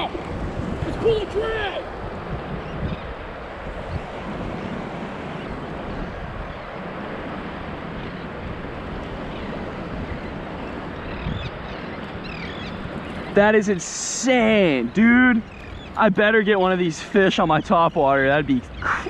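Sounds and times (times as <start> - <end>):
wind buffeting microphone: 0.0 - 13.4
surf washing: 0.0 - 19.0.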